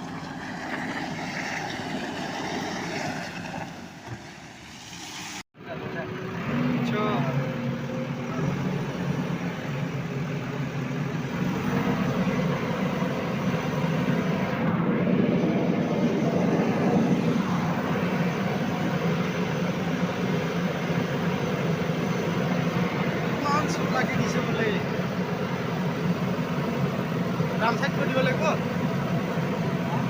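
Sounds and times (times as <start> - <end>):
diesel engine running under load: 0.0 - 4.1, 5.6 - 30.0.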